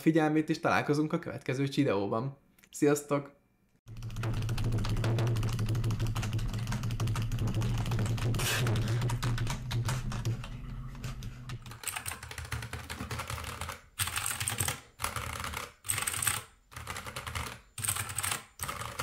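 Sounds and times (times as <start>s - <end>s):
mechanical keyboard typing: 3.9s - 10.6s, 11.6s - 19.0s.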